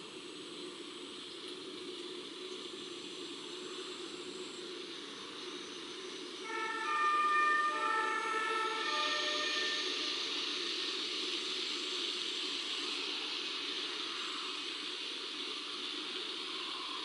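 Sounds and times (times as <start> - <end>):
breeze and water hiss: 0.0 - 17.0
distant two-tone siren: 6.4 - 10.3.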